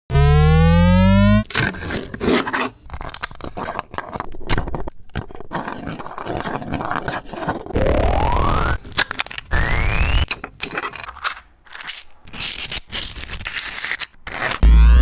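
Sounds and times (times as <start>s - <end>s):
motor whine rising in pitch: 0.1s - 1.5s, 7.8s - 8.8s, 9.5s - 10.2s, 14.6s - 15.0s.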